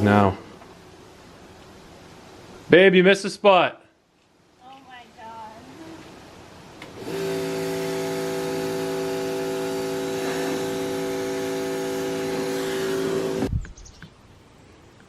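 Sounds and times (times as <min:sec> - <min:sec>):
machine motor with rushing hiss: 0:06.9 - 0:13.5.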